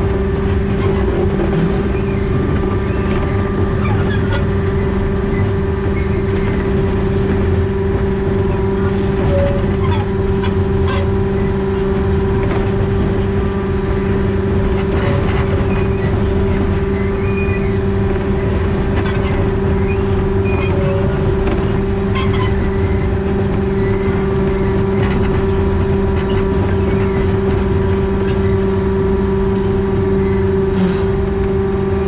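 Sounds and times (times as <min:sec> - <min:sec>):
locomotive diesel engine droning: 0:00.0 - 0:32.0
faint short squeaks: 0:14.8 - 0:28.9, 0:30.0 - 0:31.3.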